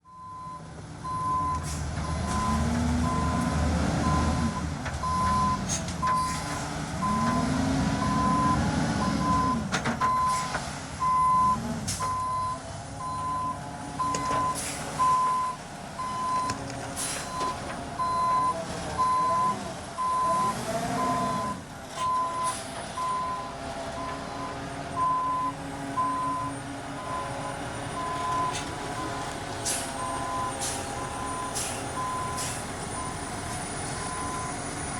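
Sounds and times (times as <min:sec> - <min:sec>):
reversing alarm beeping: 0:00.1 - 0:06.4, 0:08.0 - 0:10.4, 0:11.0 - 0:16.6, 0:17.2 - 0:34.9
diesel engine revving: 0:00.1 - 0:34.9.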